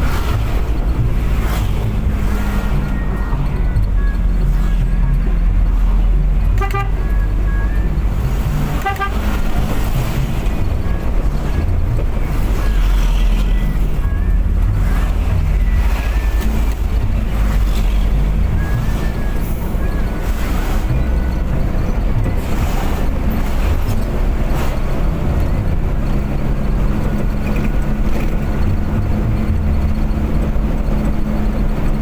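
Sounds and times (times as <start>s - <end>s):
vehicle engine and tyres rumbling: 0.0s - 32.0s
car horn toots: 2.7s - 16.8s.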